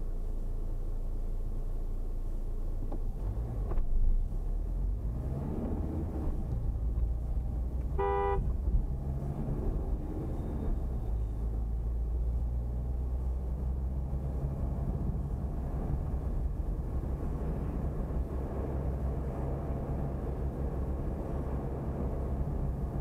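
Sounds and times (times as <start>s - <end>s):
road vehicle rumble: 0.0s - 23.0s
car horn toot: 7.9s - 8.5s.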